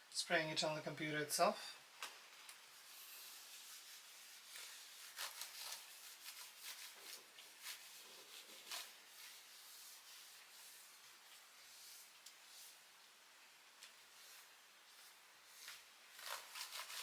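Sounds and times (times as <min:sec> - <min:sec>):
damp cloth rubbing a laptop: 0:02.7 - 0:12.9.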